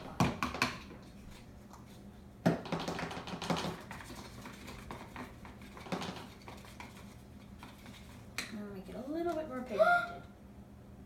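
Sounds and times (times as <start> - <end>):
utensil against a bowl: 0.0 - 8.6
plastic containers clattering: 2.5 - 7.0.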